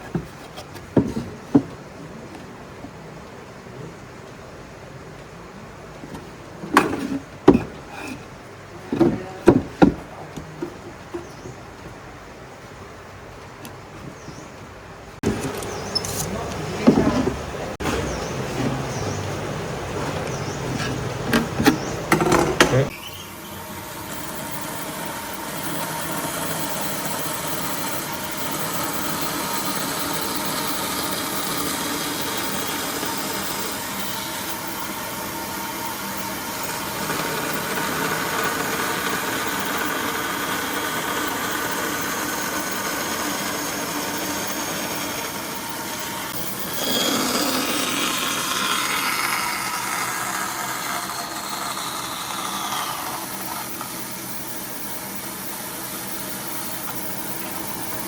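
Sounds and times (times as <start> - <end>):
handheld power tool running: 23.4 - 58.0.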